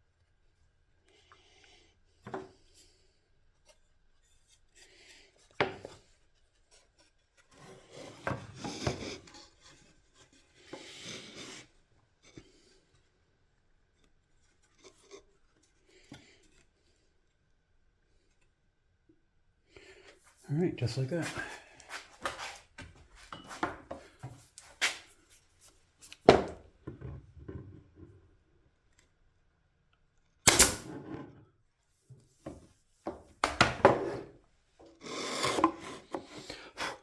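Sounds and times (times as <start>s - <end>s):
hands rubbing and scraping parts: 30.5s - 30.9s
sharp knock: 30.5s - 30.9s.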